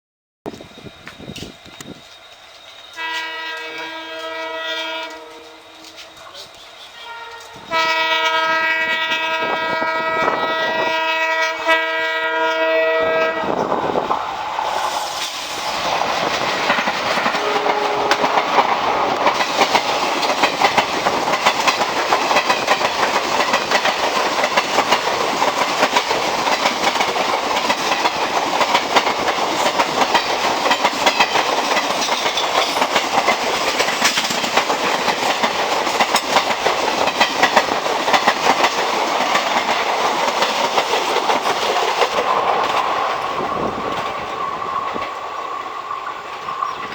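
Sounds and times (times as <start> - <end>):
train wheels clicking on rails: 0.5 - 8.1, 13.5 - 46.9
train coaches rattling: 0.5 - 46.9
locomotive horn chord: 3.0 - 6.2, 7.0 - 13.6, 17.3 - 18.6.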